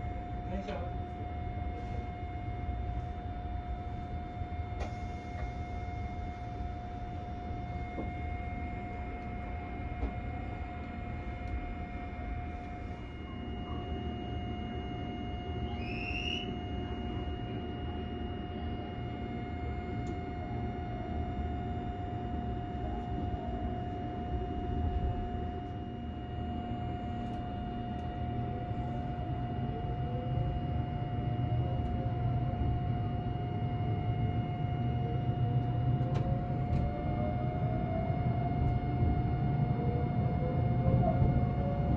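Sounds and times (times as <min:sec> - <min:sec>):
electric whine: 0:02.2 - 0:39.8.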